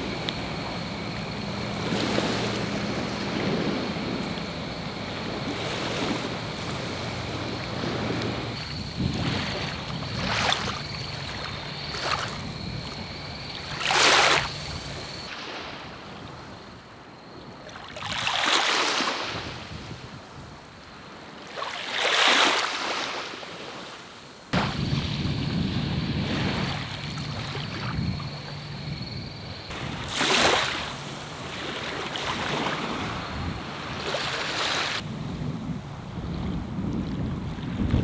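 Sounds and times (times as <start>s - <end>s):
small waves washing onto shore: 0.0s - 16.8s, 29.7s - 35.1s.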